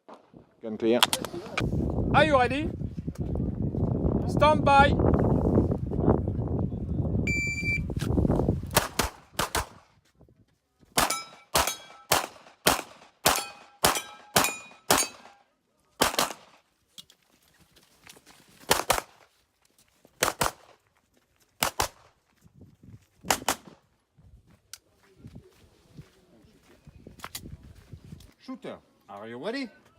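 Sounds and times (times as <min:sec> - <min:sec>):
electronic timer beep: 0:07.3 - 0:07.9
pistol shots: 0:08.7 - 0:09.8, 0:11.0 - 0:15.4, 0:16.0 - 0:16.6, 0:18.7 - 0:19.2, 0:20.2 - 0:20.7, 0:21.6 - 0:22.1, 0:23.3 - 0:23.8
metallic ring of target: 0:11.0 - 0:12.1, 0:13.3 - 0:15.4.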